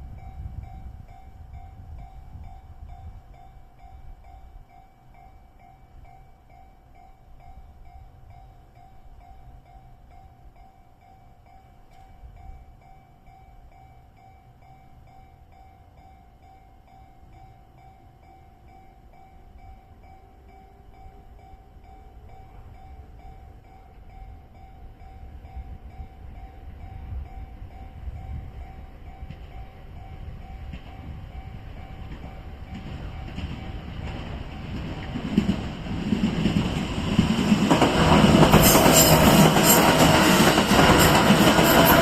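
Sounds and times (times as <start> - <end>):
approaching train rumble: 0.0 - 42.0.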